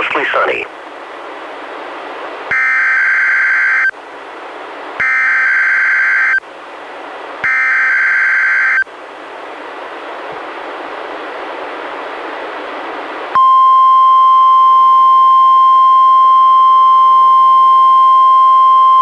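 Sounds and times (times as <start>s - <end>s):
radio hiss: 0.0s - 0.7s.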